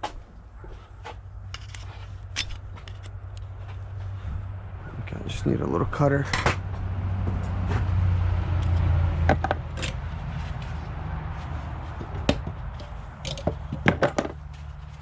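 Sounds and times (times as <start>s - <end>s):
steady low hum: 0.0s - 13.7s
hand tools clicking and knocking: 8.6s - 10.0s, 11.9s - 14.5s.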